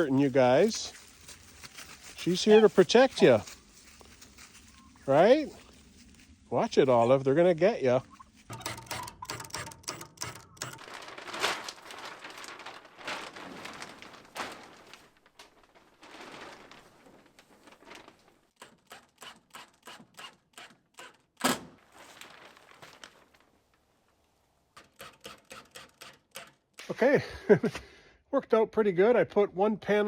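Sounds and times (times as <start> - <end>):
plastic tarp rustling: 0.0 - 8.7, 10.6 - 18.6, 21.5 - 24.8
sharp clicks: 8.5 - 10.9.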